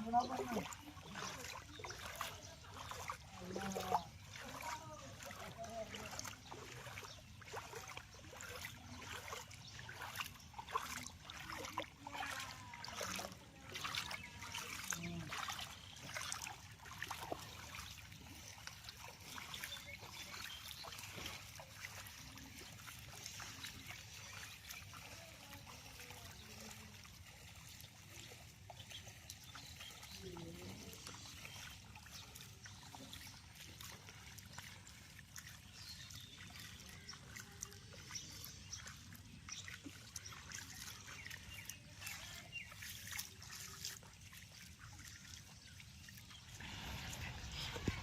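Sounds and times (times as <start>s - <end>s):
floodwater splashing: 0.0s - 48.0s.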